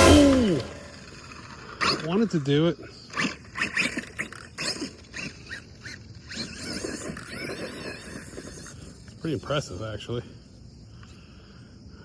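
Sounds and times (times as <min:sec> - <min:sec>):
electric rc car motor whining: 0:00.0 - 0:02.1.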